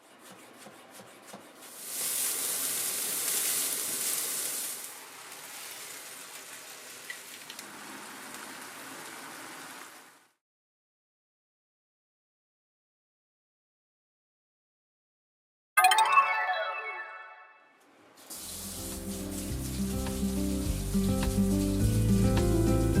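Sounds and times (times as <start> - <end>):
food sizzling in oil: 1.7 - 10.2, 18.2 - 23.0.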